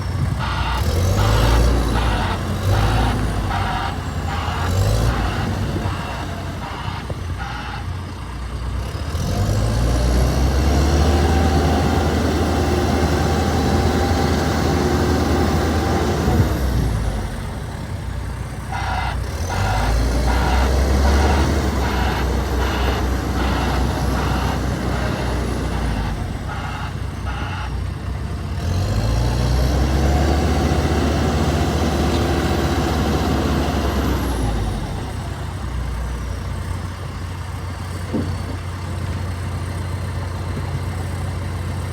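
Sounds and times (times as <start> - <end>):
diesel engine revving: 0.0 - 41.9.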